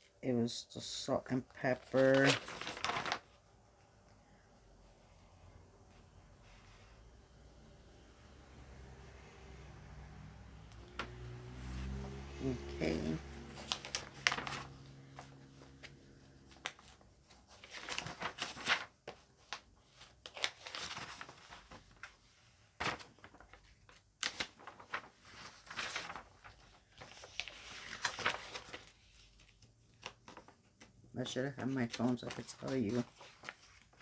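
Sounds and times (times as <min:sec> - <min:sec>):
packaging crinkling and rustling: 0:01.8 - 0:03.3, 0:13.6 - 0:14.9, 0:16.6 - 0:22.1, 0:22.8 - 0:30.6.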